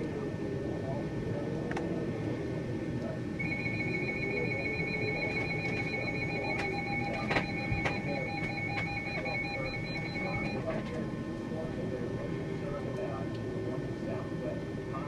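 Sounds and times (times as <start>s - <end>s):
electronic alarm beeping: 3.4s - 10.7s.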